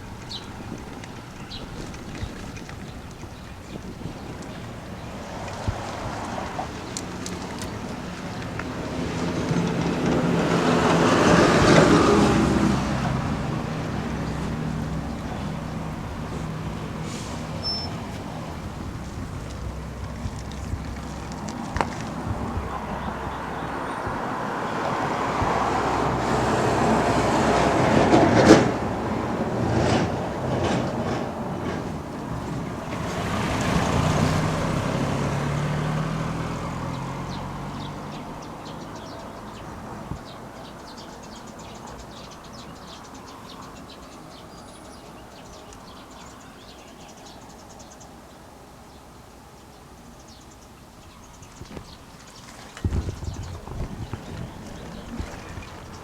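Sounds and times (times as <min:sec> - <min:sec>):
road traffic passing: 0:00.0 - 0:56.0.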